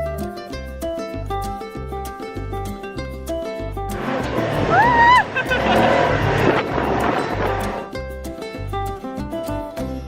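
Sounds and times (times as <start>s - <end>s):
background music with pulsing bass: 3.8s - 8.0s.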